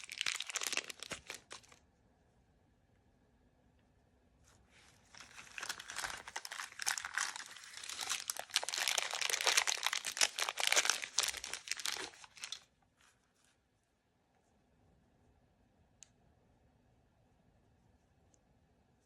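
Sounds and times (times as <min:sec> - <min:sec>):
plastic packaging crinkling: 0:00.0 - 0:01.8, 0:05.0 - 0:12.7.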